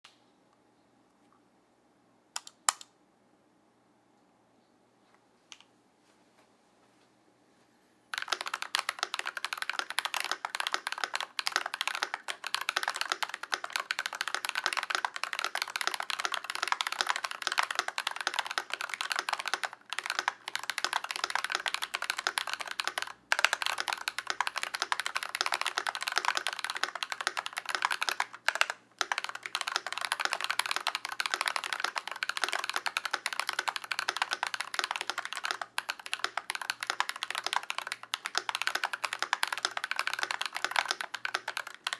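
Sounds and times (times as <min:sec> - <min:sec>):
mechanical keyboard typing: 0:08.1 - 0:41.9.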